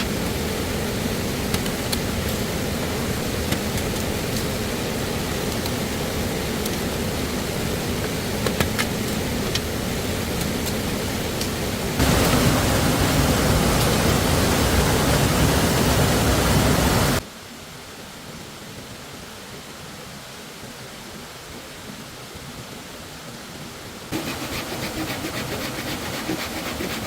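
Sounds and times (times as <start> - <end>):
stream water rushing: 0.0 - 17.2, 24.1 - 27.0.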